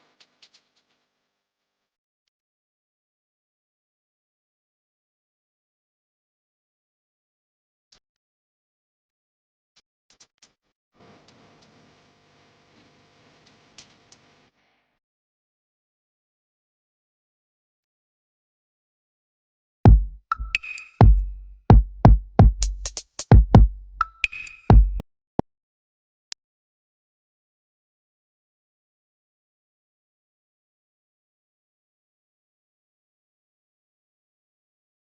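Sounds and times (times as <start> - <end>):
electronic music with drum machine: 19.9 - 25.0.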